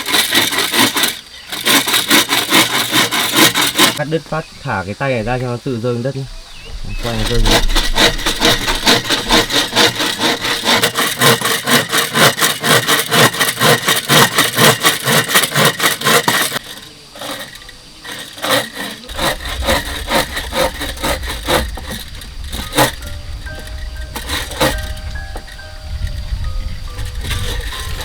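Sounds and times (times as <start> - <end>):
hand saw cutting bamboo: 0.0 - 4.5, 6.9 - 28.0
light scrapes: 6.2 - 11.2, 15.9 - 28.0.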